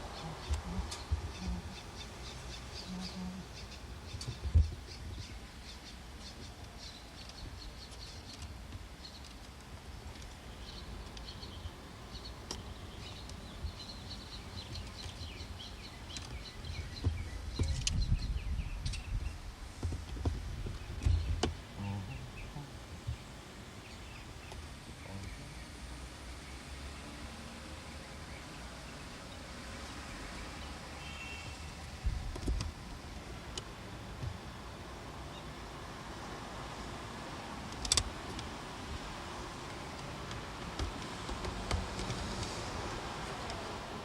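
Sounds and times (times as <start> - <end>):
small birds chirping: 0.0 - 35.8
steady background noise: 0.0 - 44.0
low rumbling: 9.7 - 35.0.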